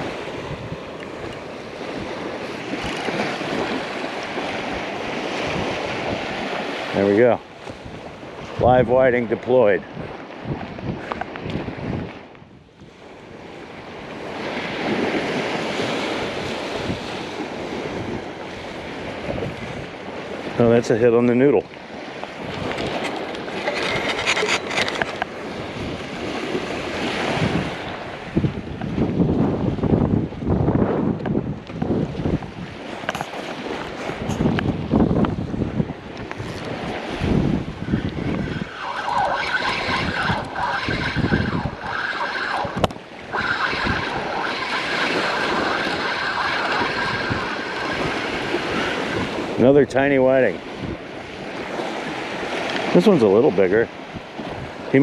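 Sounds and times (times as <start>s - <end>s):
surf rushing: 0.0s - 12.0s, 13.1s - 55.0s
wind buffeting microphone: 0.0s - 55.0s
clicks and rubbing sounds: 22.7s - 25.3s
fishing reel whirring: 37.8s - 49.4s.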